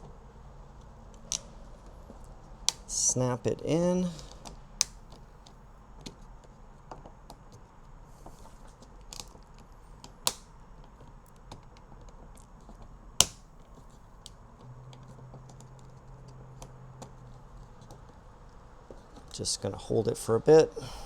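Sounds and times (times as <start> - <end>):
plastic clips snapping: 1.2 - 1.5, 2.6 - 3.0, 4.2 - 5.2, 10.3 - 10.5, 13.2 - 13.4.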